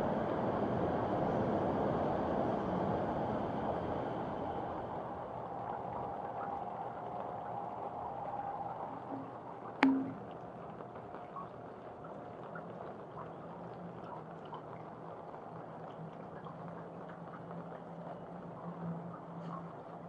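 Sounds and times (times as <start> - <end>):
rain pattering and dripping: 3.6 - 20.0
sharp knock: 9.8 - 10.2.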